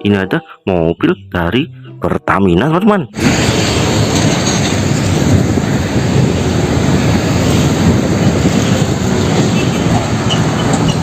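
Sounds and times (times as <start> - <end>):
heavy vehicle rumbling: 3.1 - 11.0.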